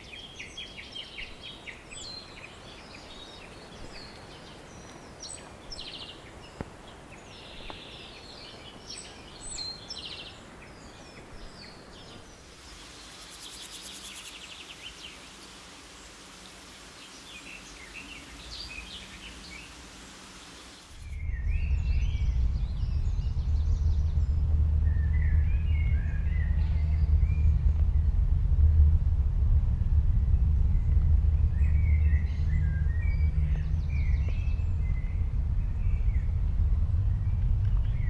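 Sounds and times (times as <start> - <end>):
birds chirping: 0.0 - 24.0
rasping pulsed bird calls: 12.3 - 21.0
loud low rumble: 21.0 - 38.0.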